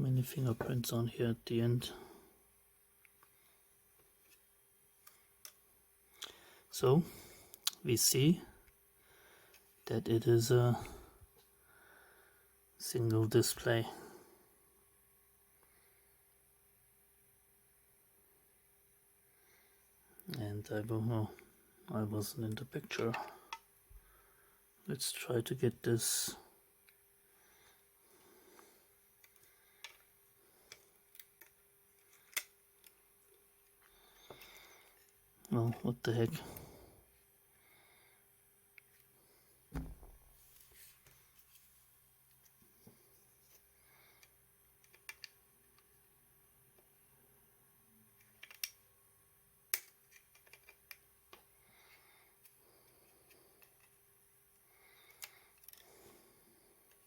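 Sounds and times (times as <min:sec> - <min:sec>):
plastic parts clicking: 0:30.7 - 0:33.0, 0:44.2 - 0:45.9, 0:48.2 - 0:48.8, 0:49.7 - 0:51.4, 0:55.0 - 0:55.9.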